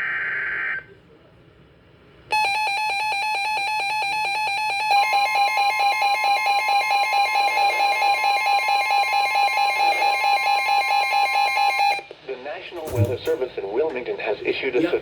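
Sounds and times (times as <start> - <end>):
steady alarm tone: 2.3 - 12.0.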